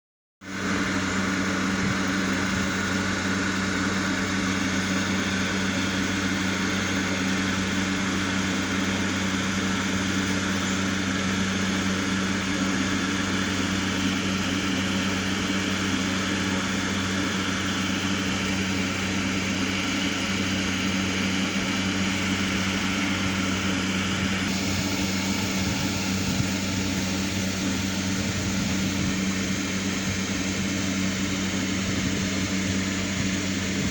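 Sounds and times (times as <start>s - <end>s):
amplifier hum: 0.5s - 33.9s
loudspeaker hiss: 24.5s - 31.1s.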